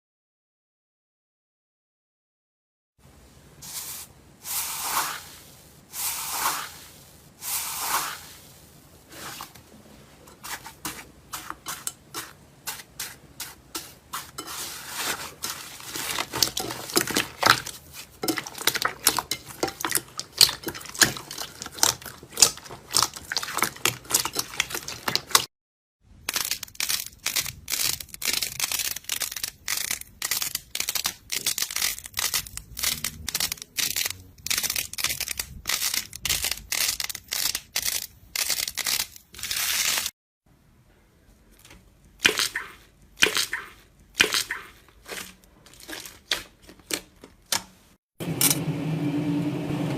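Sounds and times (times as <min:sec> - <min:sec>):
slime swishing: 0:03.6 - 0:09.7, 0:10.4 - 0:25.5, 0:42.2 - 0:47.0
slime crackling and popping: 0:15.7 - 0:25.5, 0:26.2 - 0:40.1.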